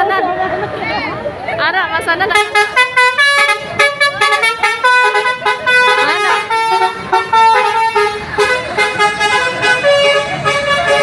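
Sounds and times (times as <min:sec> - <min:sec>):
musical air horn playing a tune: 0:02.4 - 0:11.0.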